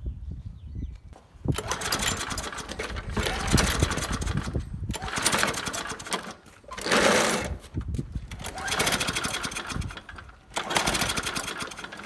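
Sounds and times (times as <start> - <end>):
lawn mower engine running: 1.5 - 12.0.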